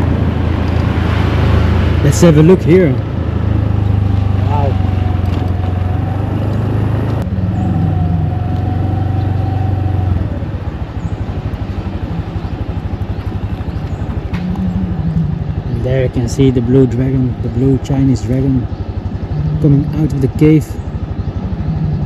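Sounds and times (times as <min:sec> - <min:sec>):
motor vehicle engine running: 0:00.0 - 0:22.0.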